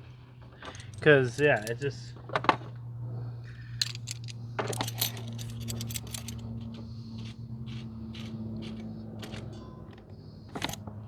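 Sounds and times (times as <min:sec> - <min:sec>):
metallic tool clicks and clinks: 0:00.6 - 0:02.0, 0:03.8 - 0:09.8.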